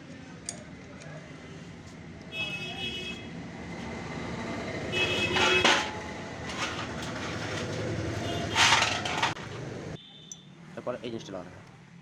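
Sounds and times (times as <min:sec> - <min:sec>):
traffic rumble: 0:00.0 - 0:10.0
metal parts clattering: 0:05.3 - 0:07.7, 0:08.4 - 0:09.4.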